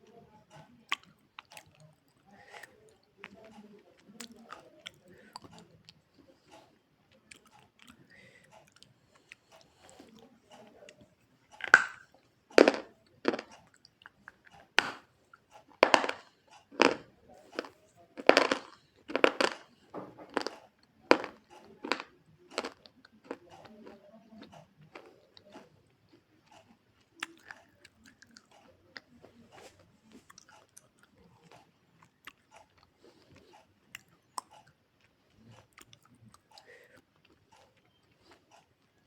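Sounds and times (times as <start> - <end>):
person chewing softly: 0.0 - 39.0
loud sharp food crunches: 20.3 - 23.4.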